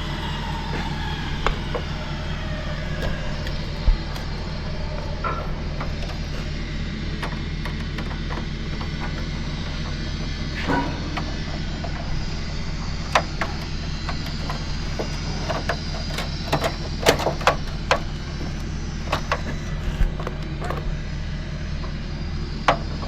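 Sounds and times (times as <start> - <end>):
steady low hum: 0.0 - 23.0
sharp clicks and knocks: 5.0 - 20.9.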